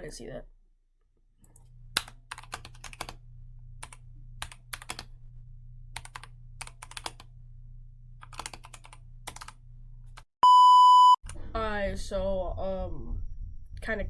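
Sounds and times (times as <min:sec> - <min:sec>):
low electrical hum: 0:01.4 - 0:10.2, 0:11.0 - 0:14.0
computer keyboard typing: 0:01.5 - 0:03.2, 0:03.8 - 0:05.1, 0:06.0 - 0:07.3, 0:08.2 - 0:09.6.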